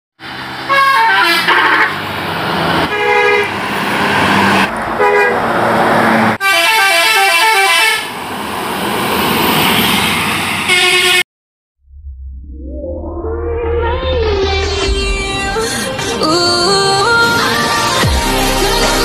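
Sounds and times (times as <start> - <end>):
musical air horns: 0.7 - 2.0, 6.4 - 8.1, 10.7 - 11.2.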